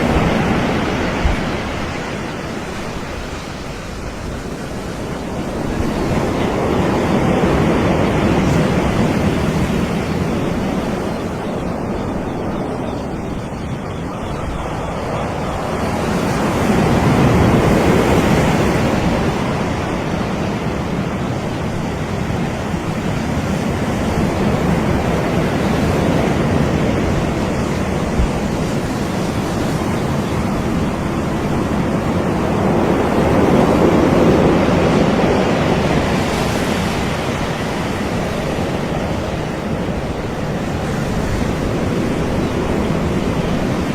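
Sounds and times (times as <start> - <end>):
waves breaking on beach: 0.0 - 43.9.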